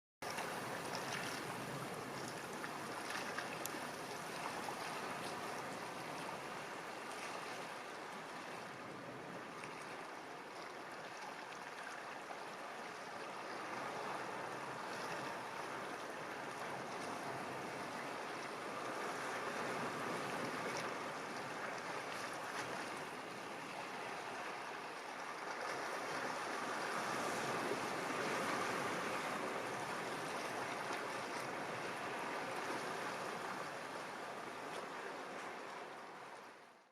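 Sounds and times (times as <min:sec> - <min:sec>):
sea surf washing: 0:12.8 - 0:36.3.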